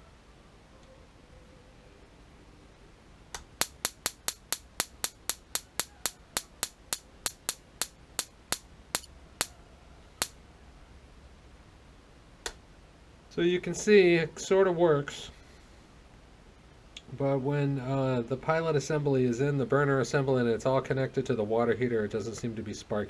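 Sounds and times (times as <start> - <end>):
sharp electric sparks snapping: 3.4 - 9.5.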